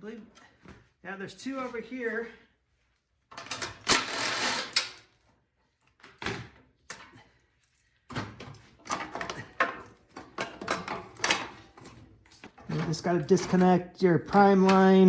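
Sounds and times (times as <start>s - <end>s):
hand tools clinking on metal: 8.9s - 15.0s.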